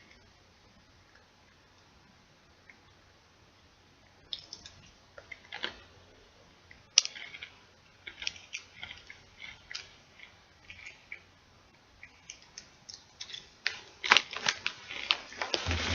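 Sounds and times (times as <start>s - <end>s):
chip bag crinkling: 7.0s - 11.1s, 12.1s - 15.9s.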